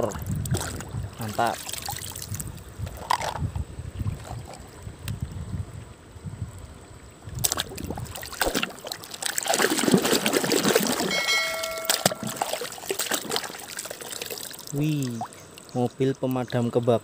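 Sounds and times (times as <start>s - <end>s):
water splashing and trickling: 0.0s - 17.0s
short steady tone: 11.1s - 12.6s.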